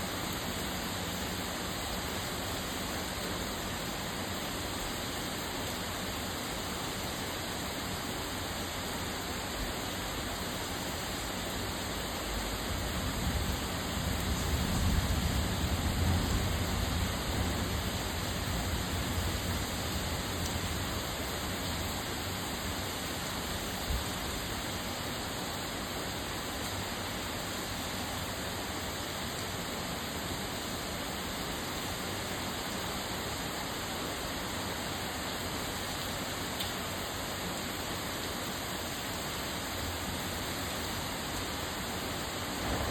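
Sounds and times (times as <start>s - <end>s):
torrential rain pouring: 0.0s - 42.9s
low rumble: 42.5s - 42.9s.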